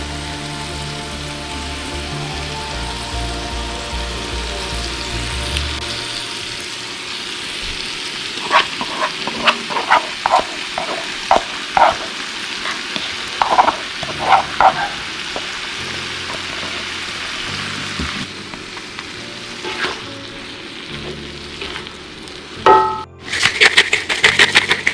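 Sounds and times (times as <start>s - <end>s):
sausage sizzling in a pan: 0.0s - 24.9s
sharp pops and clicks: 23.3s - 24.9s.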